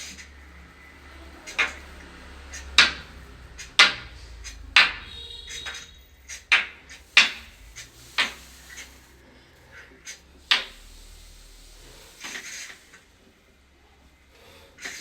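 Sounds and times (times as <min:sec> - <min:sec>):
scraping rustle: 0:05.8 - 0:13.1.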